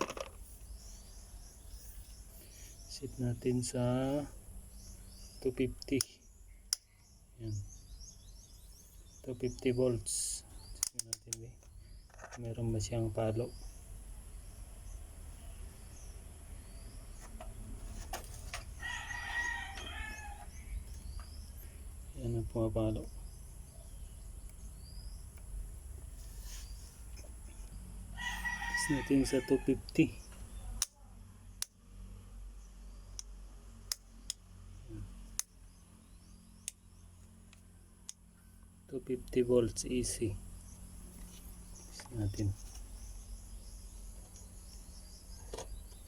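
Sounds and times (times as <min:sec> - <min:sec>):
sharp clicks: 0:05.8 - 0:06.9, 0:10.6 - 0:11.7, 0:33.9 - 0:34.4
rooster crowing: 0:18.8 - 0:20.6, 0:28.1 - 0:29.8.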